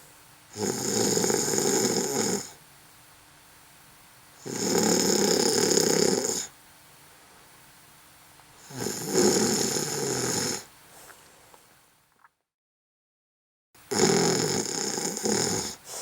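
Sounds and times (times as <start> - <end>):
person snoring: 0.5 - 2.6, 4.4 - 6.5, 8.6 - 10.7, 13.9 - 16.0.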